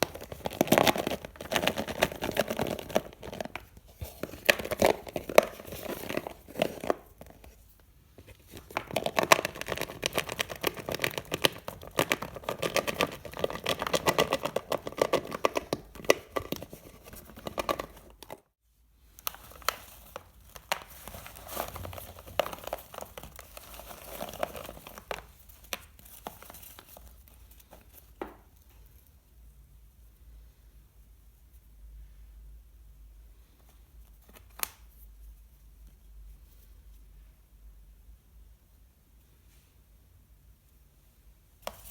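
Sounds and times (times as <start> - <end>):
candies crinkling and clicking: 0.0 - 7.6, 8.2 - 18.5, 19.2 - 27.8.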